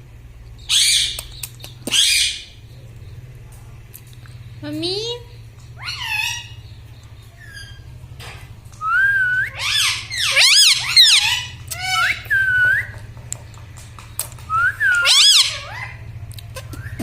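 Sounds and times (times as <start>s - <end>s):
steady low hum: 0.0s - 17.0s
parrot whistled calls: 0.6s - 2.6s, 5.8s - 6.6s, 8.8s - 13.0s, 14.5s - 16.0s.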